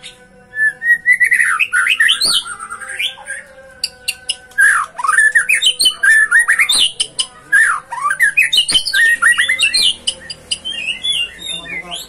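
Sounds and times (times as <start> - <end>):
songbird chirping and whistling: 0.0 - 12.0.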